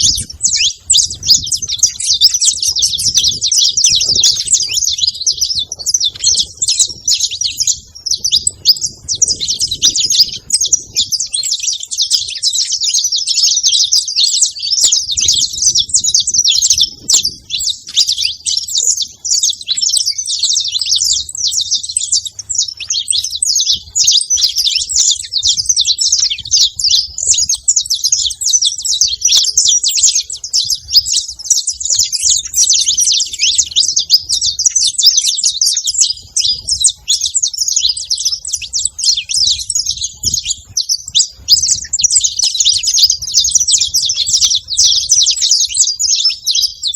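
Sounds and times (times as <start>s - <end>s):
finches chirping: 0.0s - 46.9s.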